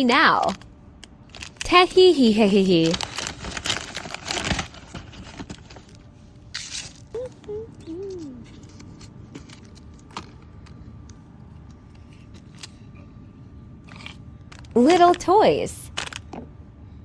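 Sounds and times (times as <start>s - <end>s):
faint hum: 0.0s - 17.0s
candy wrappers crinkling: 0.1s - 10.4s, 13.9s - 16.3s.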